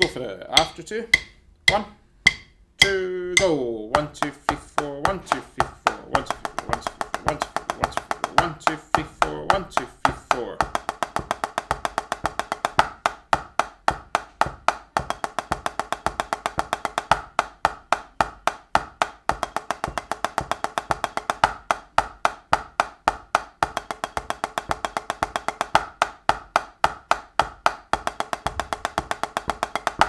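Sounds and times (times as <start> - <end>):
snare drum single strokes: 3.4 - 11.1.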